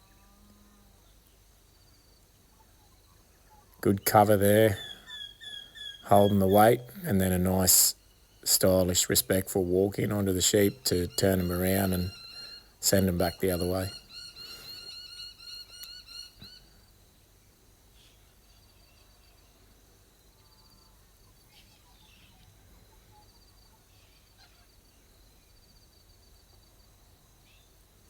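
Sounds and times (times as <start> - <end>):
background hiss: 0.0 - 28.0
faint high bird trills: 3.5 - 7.0, 10.4 - 16.8
bird pitched call: 3.5 - 9.0, 9.7 - 16.7.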